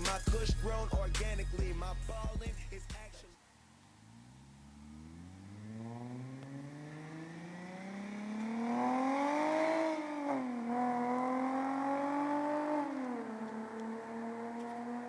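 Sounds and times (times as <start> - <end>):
car engine accelerating: 3.9 - 15.0.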